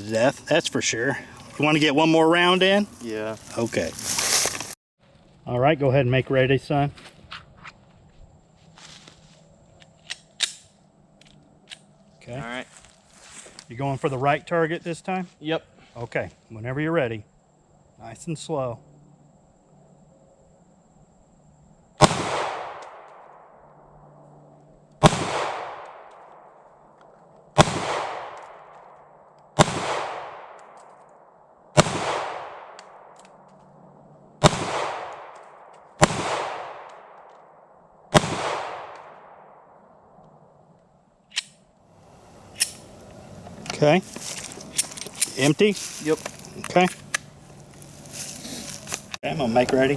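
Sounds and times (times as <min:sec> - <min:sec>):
pistol shots: 0:22.0 - 0:23.3, 0:25.0 - 0:26.5, 0:27.6 - 0:28.7, 0:29.6 - 0:30.8, 0:31.8 - 0:33.1, 0:34.4 - 0:37.2, 0:38.1 - 0:39.6.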